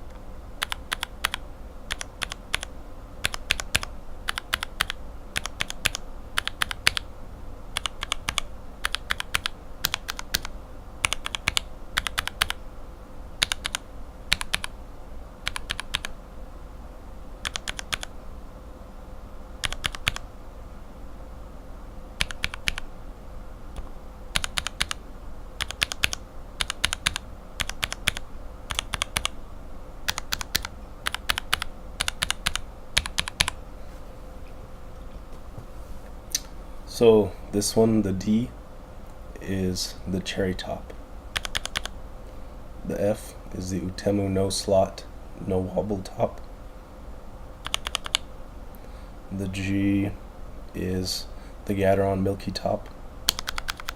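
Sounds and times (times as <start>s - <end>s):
mechanical keyboard typing: 0.6s - 7.1s, 7.8s - 12.6s, 13.4s - 14.7s, 15.4s - 16.1s, 17.4s - 18.1s, 19.6s - 20.2s, 22.2s - 22.8s, 23.8s - 25.0s, 25.6s - 29.4s, 30.1s - 33.6s, 41.4s - 41.9s, 47.6s - 48.2s, 53.3s - 53.9s.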